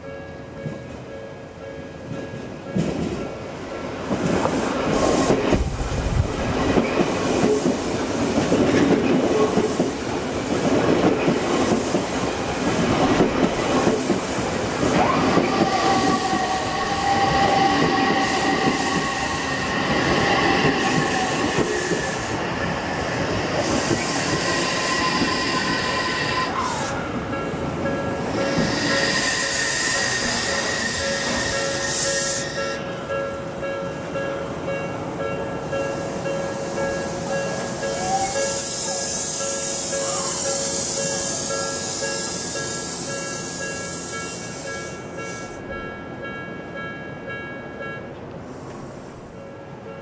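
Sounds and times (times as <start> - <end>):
train wheels rumbling and clacking: 2.0 - 32.6.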